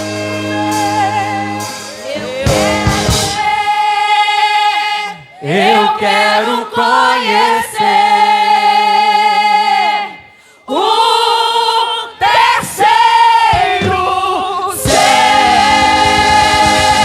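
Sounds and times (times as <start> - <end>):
backing music: 0.0 - 4.5, 12.4 - 17.0
women's choir singing a hymn: 0.5 - 17.0.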